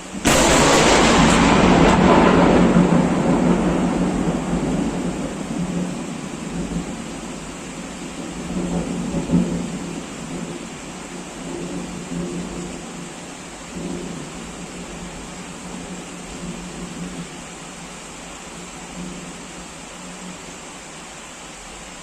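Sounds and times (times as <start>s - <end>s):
heavy rain: 0.0s - 22.0s
thunderclap rolling into rumble: 0.2s - 7.0s.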